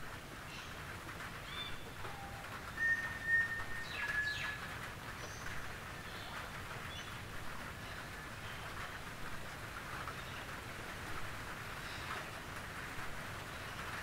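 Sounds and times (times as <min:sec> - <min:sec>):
rain on a tin roof: 0:00.0 - 0:14.0
birds chirping and whistling: 0:01.5 - 0:06.3.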